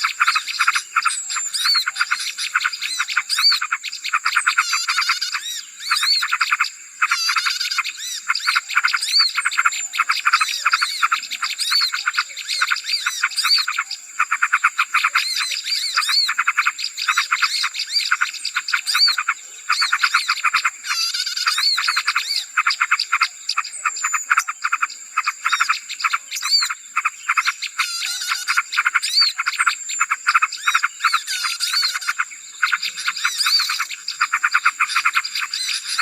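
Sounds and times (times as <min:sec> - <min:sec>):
small birds chattering: 0:00.0 - 0:36.0
bird whistles: 0:25.5 - 0:36.0.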